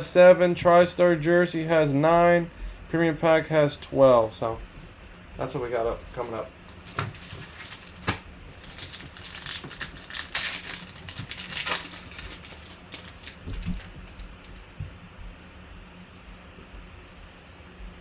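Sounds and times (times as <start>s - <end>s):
wrapper crinkling and tearing: 6.2s - 14.5s.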